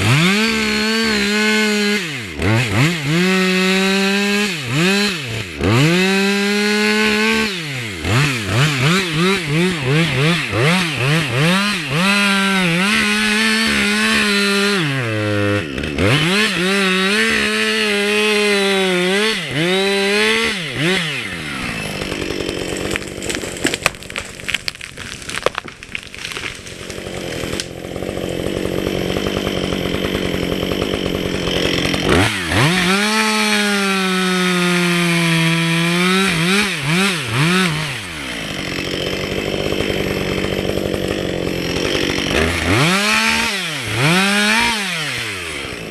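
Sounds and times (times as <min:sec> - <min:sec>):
chainsaw cutting wood: 0:00.0 - 0:45.9
sharp cracks: 0:22.0 - 0:27.8.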